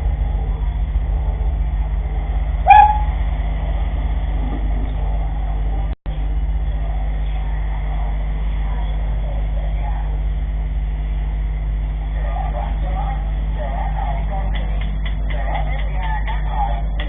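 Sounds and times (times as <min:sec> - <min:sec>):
vehicle engine rumble: 0:00.0 - 0:17.0
dog barking: 0:02.7 - 0:03.2.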